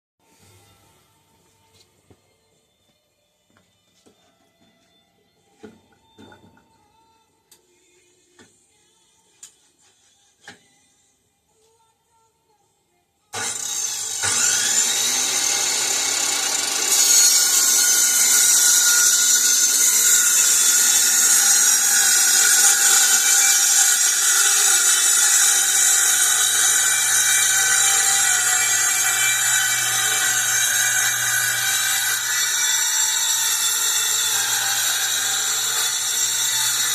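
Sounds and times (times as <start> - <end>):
power tool motor whine: 13.4 - 36.9.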